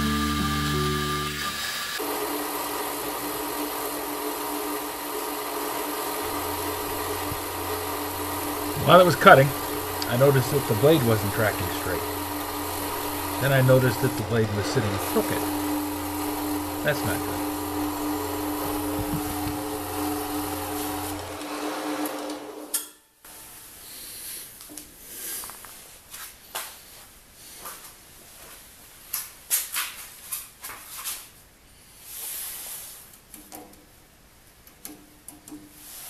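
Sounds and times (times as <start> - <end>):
band saw humming: 0.0 - 22.7
sharp clicks and knocks: 18.6 - 19.7.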